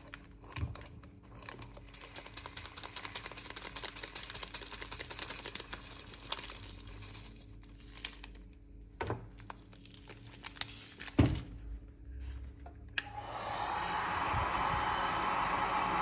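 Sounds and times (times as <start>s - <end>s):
plastic crinkling: 0.0s - 12.6s.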